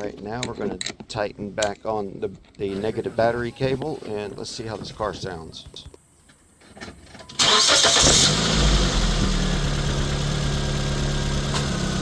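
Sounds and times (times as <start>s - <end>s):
car engine idling: 7.4s - 12.0s
starter motor cranking: 7.4s - 12.0s.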